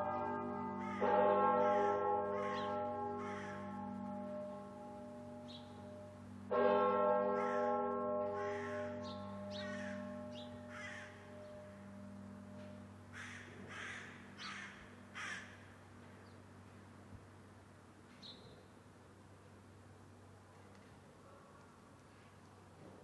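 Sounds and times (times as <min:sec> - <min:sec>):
church bell ringing: 0:00.0 - 0:15.2
bird calling: 0:13.2 - 0:15.5.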